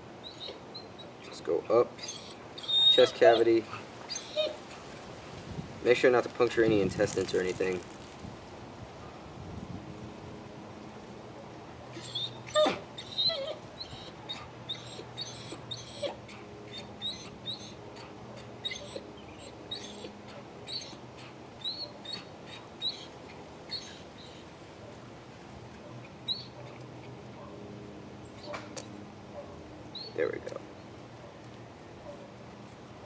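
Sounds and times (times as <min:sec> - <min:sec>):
dog whimpering: 0:00.2 - 0:01.1, 0:02.0 - 0:04.7, 0:12.0 - 0:23.1.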